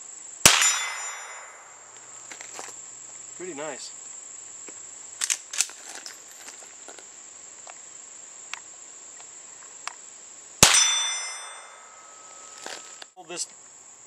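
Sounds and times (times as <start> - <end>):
insects buzzing: 0.0 - 14.0
pistol shot with ringing tail: 0.4 - 1.8, 10.6 - 12.2.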